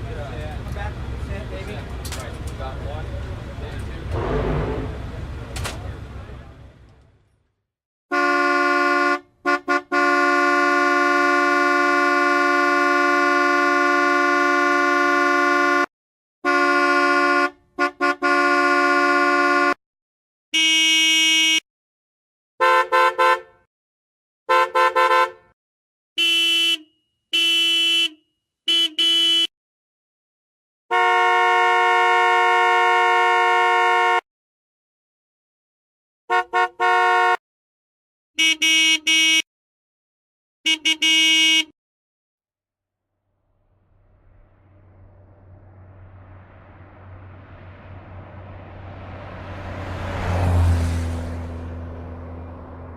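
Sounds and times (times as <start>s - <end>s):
car horn honking: 8.1s - 19.8s, 20.6s - 21.6s, 22.6s - 23.6s, 24.5s - 25.6s, 26.2s - 29.5s, 30.9s - 34.2s, 36.3s - 37.4s, 38.4s - 39.4s, 40.7s - 41.7s.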